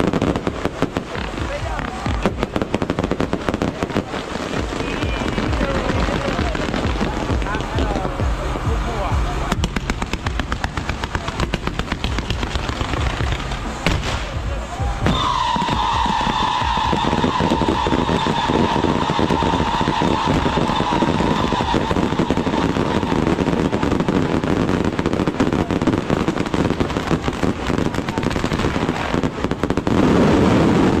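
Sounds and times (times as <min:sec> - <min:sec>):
firecrackers crackling: 0:00.0 - 0:31.0
rumbling firework burst: 0:00.0 - 0:31.0
high whistle: 0:14.7 - 0:24.0.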